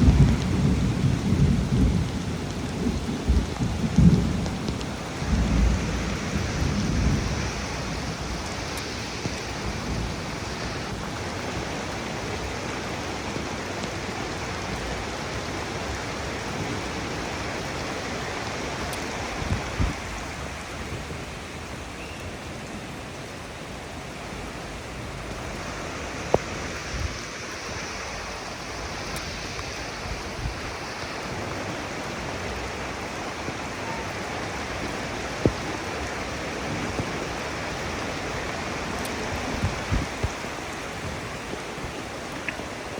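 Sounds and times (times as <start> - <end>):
low rumble of thunder: 0.0 - 13.7, 14.6 - 21.4, 28.3 - 42.0
sharp raindrop hits: 0.0 - 21.2, 25.1 - 42.7
steady rain falling: 0.0 - 42.9.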